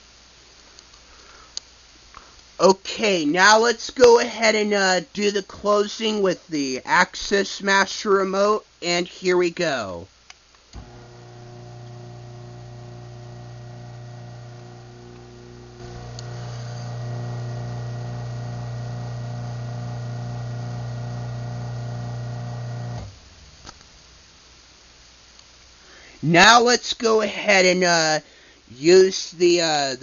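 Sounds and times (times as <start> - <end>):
faint click: 0.6 - 2.5, 10.3 - 10.9, 16.1 - 16.3, 23.0 - 23.9, 25.3 - 25.5
garage door opener motor hum: 10.8 - 23.6.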